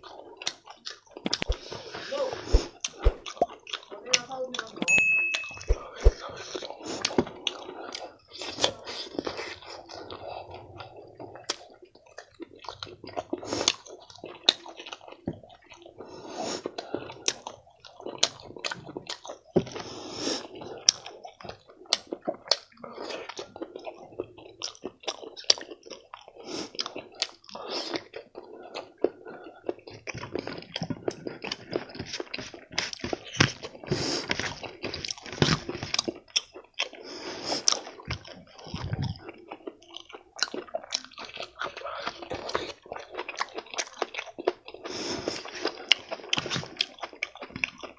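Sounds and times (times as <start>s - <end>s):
person chewing crunchy food: 0.0s - 4.8s, 5.6s - 47.9s.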